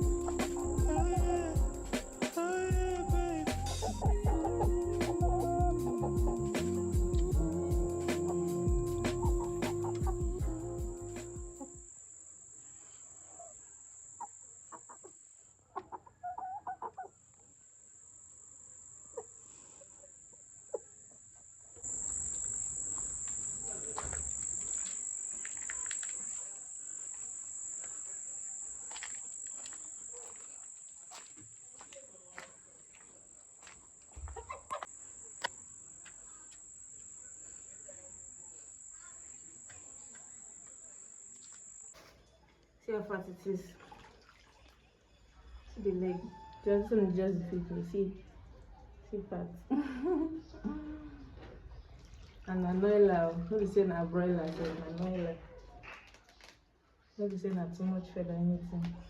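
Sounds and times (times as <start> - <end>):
chickens clucking: 0.0 - 7.3, 7.9 - 10.6, 15.7 - 17.1, 34.2 - 34.9
insects trilling: 0.0 - 42.0.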